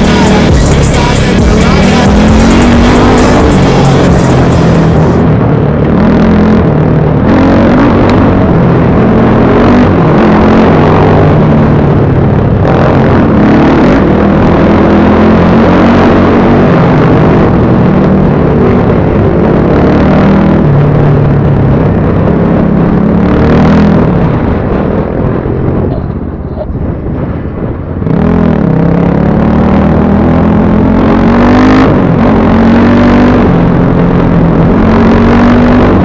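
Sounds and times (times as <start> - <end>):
motorcycle engine revving: 0.0 - 36.0.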